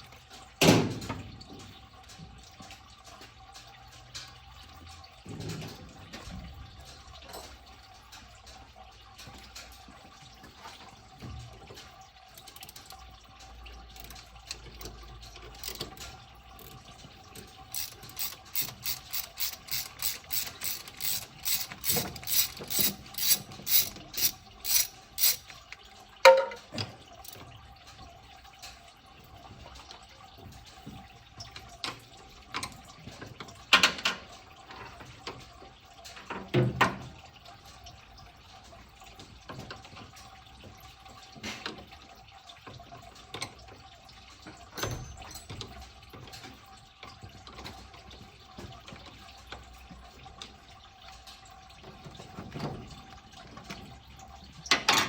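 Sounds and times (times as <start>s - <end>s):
ratchet wrench clicking: 15.5s - 16.0s, 16.6s - 16.8s, 17.7s - 25.6s
metal tools clanking: 17.6s - 25.6s.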